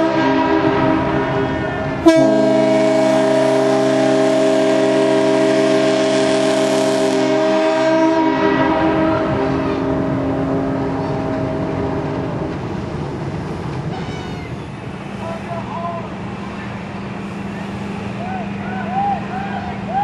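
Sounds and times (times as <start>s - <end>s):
air horns sounding deep chord: 0.0s - 12.5s.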